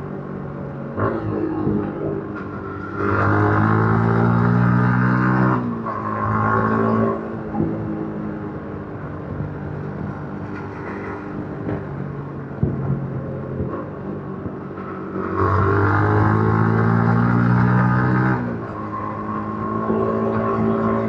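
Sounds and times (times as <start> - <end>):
motorcycle engine accelerating: 12.6 - 21.0.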